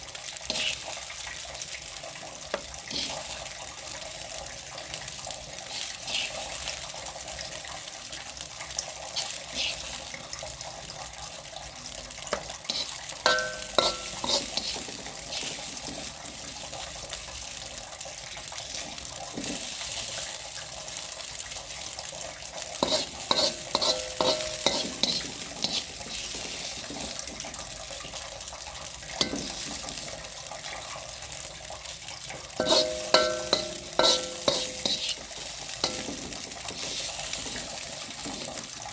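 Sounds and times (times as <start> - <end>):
food sizzling in a pan: 0.0 - 38.9
metal clinks and scrapes on pan: 12.3 - 16.1, 22.8 - 27.4, 29.2 - 30.1, 32.6 - 38.6.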